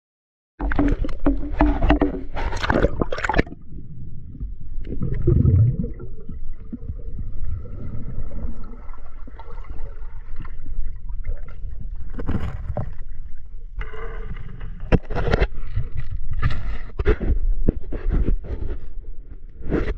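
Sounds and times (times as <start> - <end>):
water splashing: 0.6 - 3.8, 4.4 - 13.0
water sloshing and gurgling: 0.6 - 19.9.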